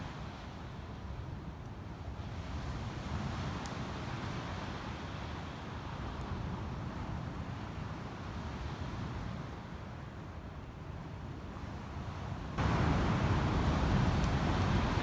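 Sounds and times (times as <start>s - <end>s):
wind rumbling on microphone: 12.6s - 15.0s.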